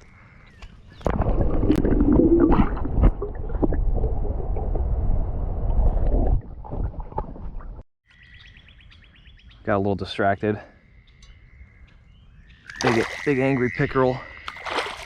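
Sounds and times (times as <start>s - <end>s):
water gurgling and sloshing: 0.9s - 7.8s, 12.7s - 13.6s, 14.2s - 15.0s.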